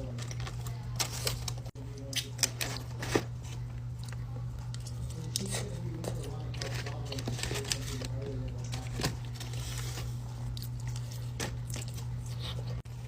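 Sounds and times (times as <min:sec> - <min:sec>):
food packaging crinkling: 0:00.0 - 0:12.6
steady low hum: 0:00.0 - 0:13.0
crunchy chewing: 0:03.5 - 0:12.8.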